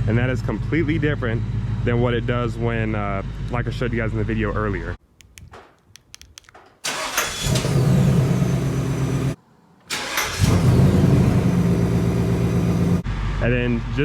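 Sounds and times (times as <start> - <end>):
car engine starting and idling: 6.8 - 13.0.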